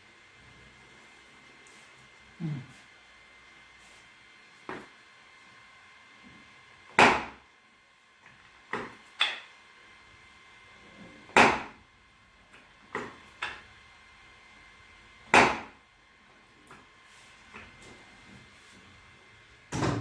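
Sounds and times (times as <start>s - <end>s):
loud sharp knocks: 7.0s - 7.4s, 11.4s - 11.8s, 15.3s - 15.7s.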